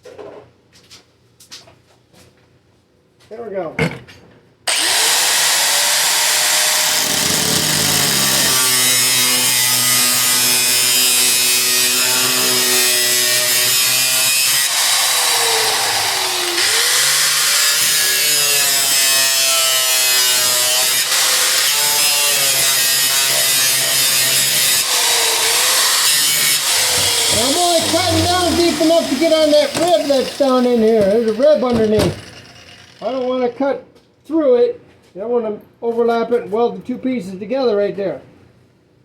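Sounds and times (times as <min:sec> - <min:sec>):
angle grinder cutting metal: 0:04.7 - 0:33.5.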